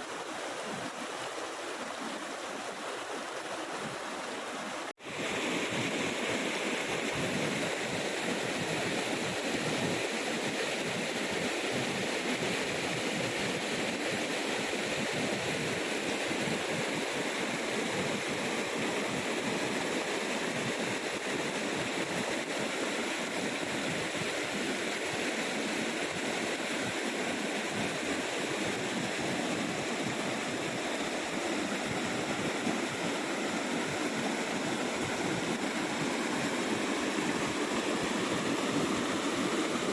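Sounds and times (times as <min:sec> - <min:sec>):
waterfall rushing: 0:29.6 - 0:39.9.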